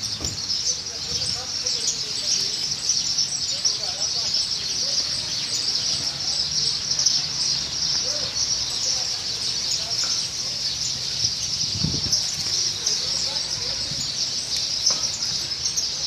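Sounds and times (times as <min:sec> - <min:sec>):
birds chirping: 0:00.0 - 0:16.0
low thump: 0:00.1 - 0:00.6.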